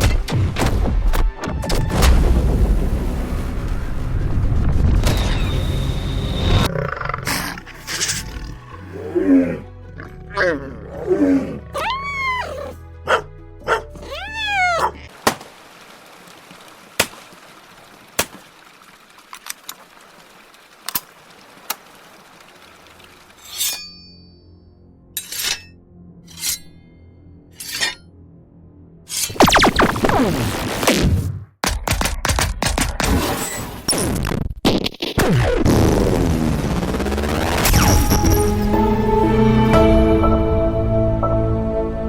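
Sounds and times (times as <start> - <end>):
animal roars and calls: 6.6 - 15.1
swords scraping in sheaths: 23.4 - 24.3, 25.2 - 26.8, 27.6 - 28.0
music bed: 37.9 - 42.0.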